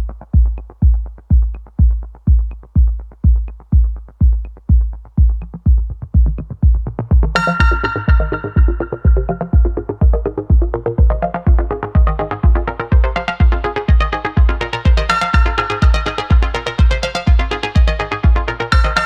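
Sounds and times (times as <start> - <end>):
fast kick-drum beat: 0.0 - 19.0
bright synth line: 7.4 - 9.9.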